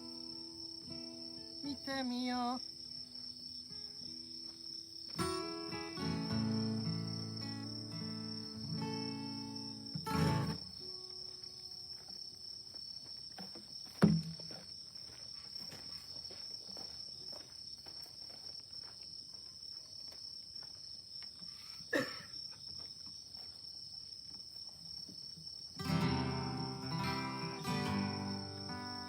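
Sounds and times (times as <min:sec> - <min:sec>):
faint bonfire crackling: 0:00.0 - 0:22.0
crickets chirring: 0:00.0 - 0:29.0
sharp knocks: 0:14.0 - 0:14.5.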